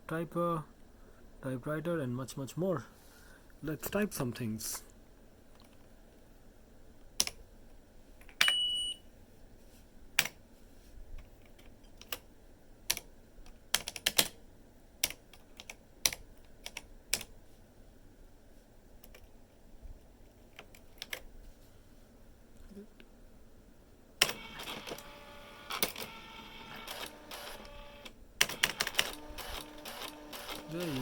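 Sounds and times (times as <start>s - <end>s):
short electronic beep: 8.4s - 9.0s.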